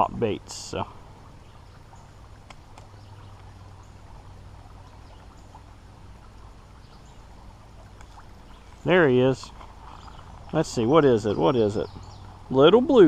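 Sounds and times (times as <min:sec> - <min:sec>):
creek water running: 0:00.0 - 0:13.0
faint small ticks: 0:01.6 - 0:04.0, 0:07.8 - 0:08.9.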